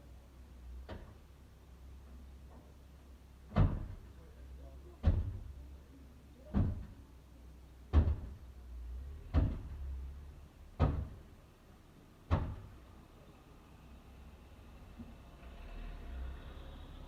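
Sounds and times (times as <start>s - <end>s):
heavy blows on a door: 7.9s - 8.5s, 10.7s - 11.3s.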